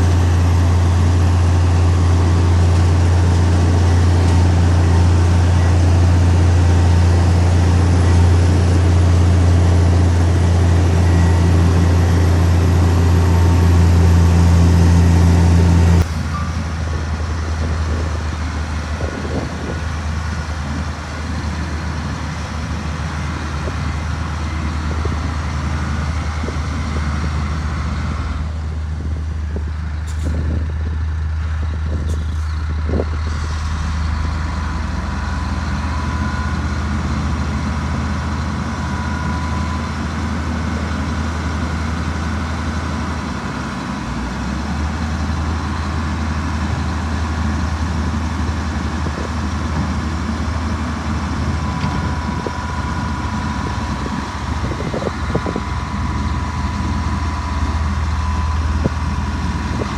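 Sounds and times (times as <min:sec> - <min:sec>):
heavy diesel engine droning: 0:00.0 - 0:59.9.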